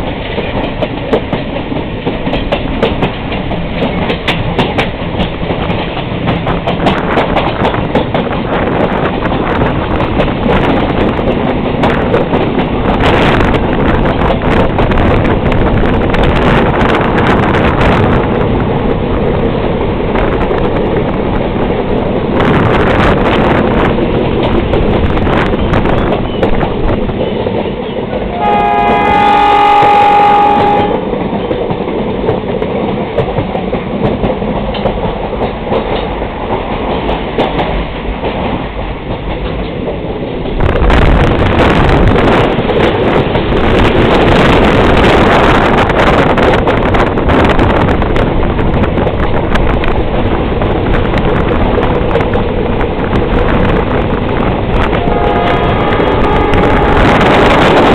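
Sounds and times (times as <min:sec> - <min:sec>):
train engine and wheel noise: 0:00.0 - 0:57.9
locomotive horn: 0:28.3 - 0:31.1, 0:54.9 - 0:57.9.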